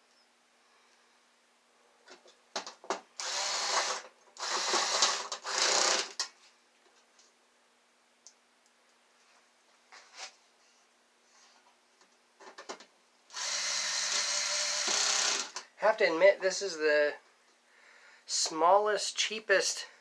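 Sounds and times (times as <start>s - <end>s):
small power tool running: 3.2s - 6.2s, 13.3s - 15.6s.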